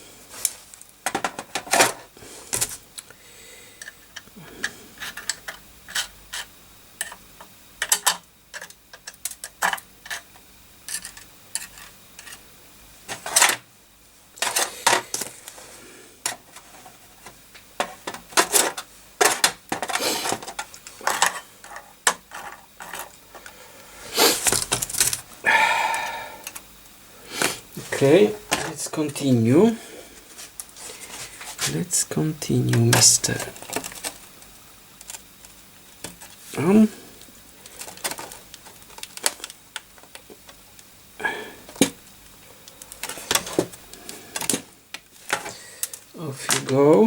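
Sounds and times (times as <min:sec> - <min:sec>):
small tools clicking and clattering: 0:03.8 - 0:12.4, 0:14.4 - 0:15.5, 0:16.2 - 0:23.5, 0:32.7 - 0:36.4, 0:37.6 - 0:40.9.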